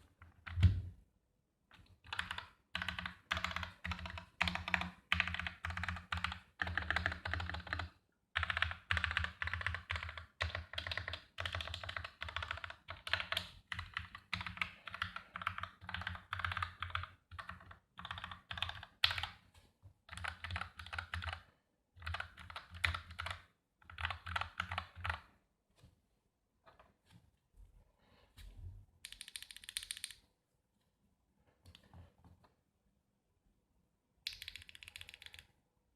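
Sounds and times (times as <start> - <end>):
mechanical keyboard keys pressed: 2.1 - 19.3.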